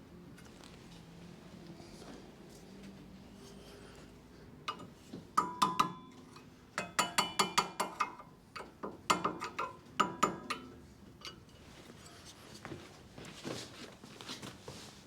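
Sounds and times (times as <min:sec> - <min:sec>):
hammer tapping metal: 0:04.7 - 0:10.8.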